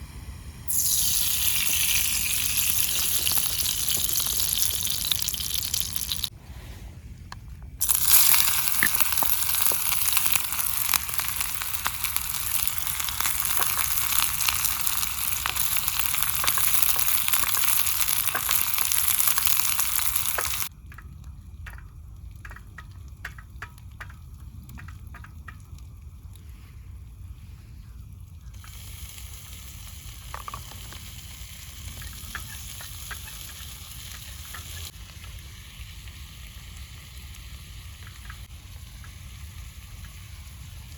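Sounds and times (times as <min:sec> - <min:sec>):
food sizzling in hot oil: 0:00.7 - 0:06.3, 0:07.8 - 0:20.7, 0:28.6 - 0:38.5.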